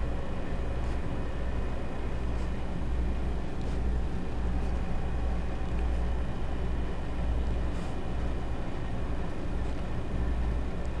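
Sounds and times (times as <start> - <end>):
dog breathing with rough rasp: 0.7 - 6.8, 7.5 - 10.2.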